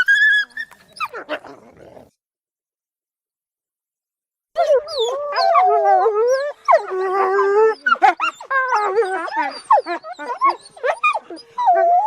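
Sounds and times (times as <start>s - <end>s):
wolves howling and yipping: 4.6s - 12.0s.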